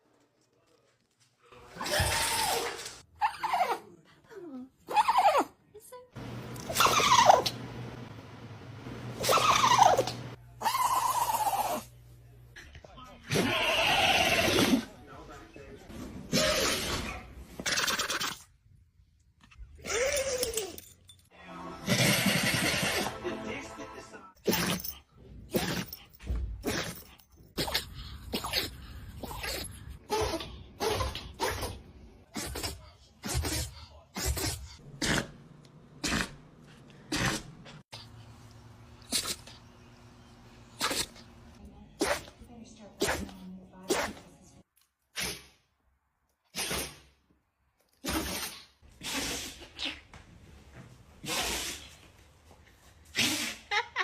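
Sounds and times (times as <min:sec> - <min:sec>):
dog sneezing: 0:16.3 - 0:18.3, 0:39.0 - 0:39.6, 0:40.7 - 0:41.2, 0:42.0 - 0:42.4, 0:43.0 - 0:44.2, 0:45.1 - 0:45.6, 0:46.5 - 0:47.1, 0:48.0 - 0:50.1, 0:51.2 - 0:52.0, 0:53.1 - 0:53.8.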